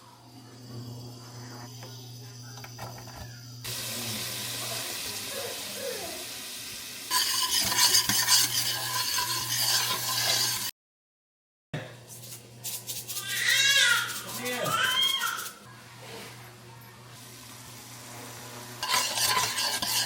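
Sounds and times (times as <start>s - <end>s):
onion sizzling in a pot: 0.6s - 10.7s, 17.0s - 20.0s
utensil scraping a pot: 7.1s - 10.7s, 12.1s - 15.7s, 18.8s - 20.0s.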